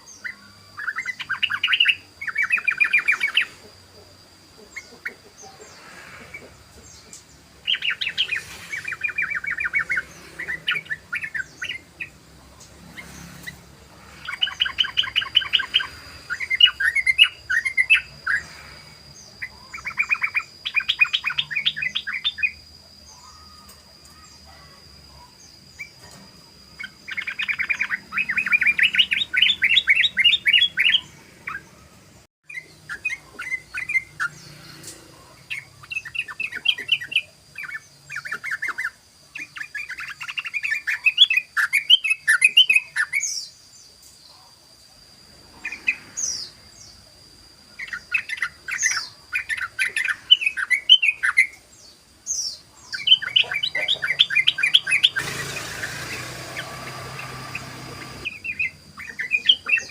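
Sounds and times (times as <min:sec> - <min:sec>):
bird rolling chatter: 0:00.8 - 0:18.6, 0:52.9 - 0:59.9.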